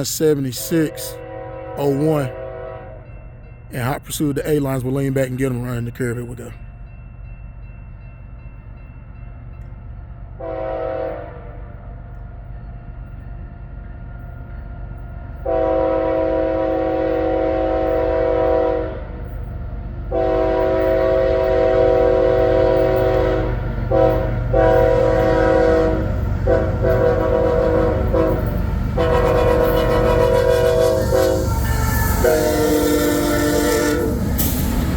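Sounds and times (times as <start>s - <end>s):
diesel locomotive rumble: 0.0s - 7.0s, 10.2s - 34.9s
locomotive air horn blasts: 0.5s - 3.0s, 10.4s - 11.6s, 15.4s - 19.1s, 20.1s - 34.6s.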